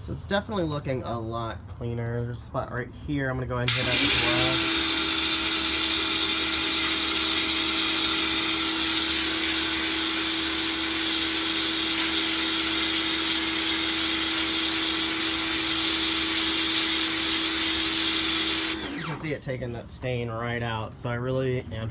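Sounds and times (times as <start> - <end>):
water jet hissing: 0.0 - 1.8, 3.7 - 20.8
pressure washer motor humming: 3.7 - 20.8.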